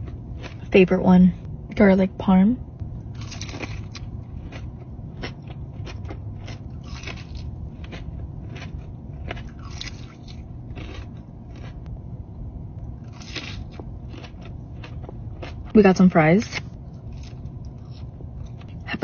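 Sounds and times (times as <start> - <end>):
crunchy chewing of fried chicken: 0.0 - 0.7, 3.1 - 11.9, 13.0 - 15.8, 16.5 - 18.9.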